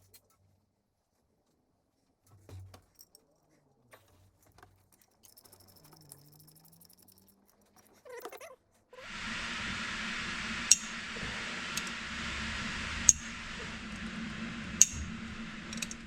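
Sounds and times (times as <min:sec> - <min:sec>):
faint clicks and knocks: 0:09.0 - 0:16.0.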